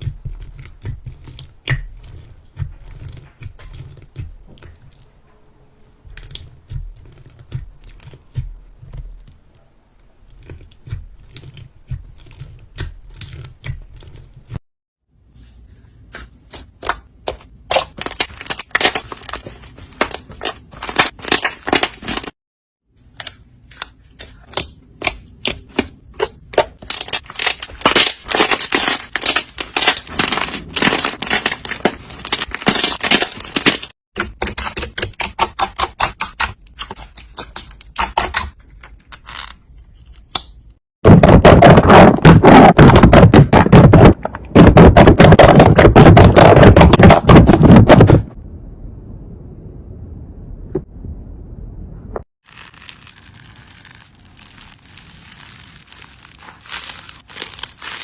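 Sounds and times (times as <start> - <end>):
slime dense crackling: 25.5 - 33.9, 52.4 - 58.0.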